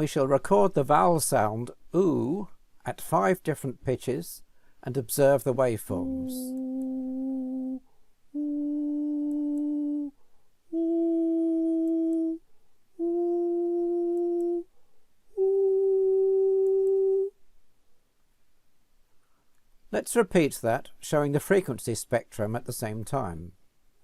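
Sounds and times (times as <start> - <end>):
person singing held notes: 4.9 - 12.4, 13.0 - 14.7, 15.3 - 17.4.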